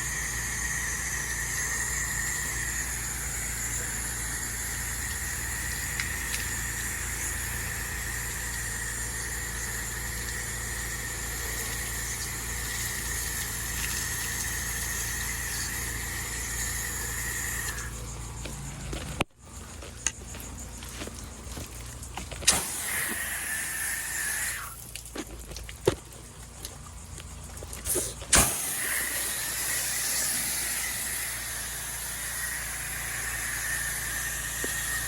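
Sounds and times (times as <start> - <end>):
high whine and hiss of spray: 0.0 - 18.0, 22.5 - 24.8, 27.9 - 35.0
pressure washer engine humming: 0.0 - 19.7, 20.3 - 25.1, 27.6 - 35.0.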